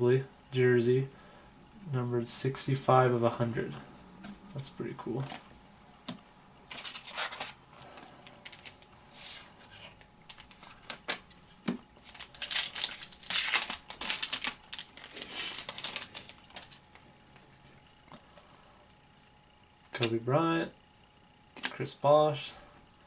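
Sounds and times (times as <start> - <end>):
foil wrapper tearing and crinkling: 12.0 - 16.8.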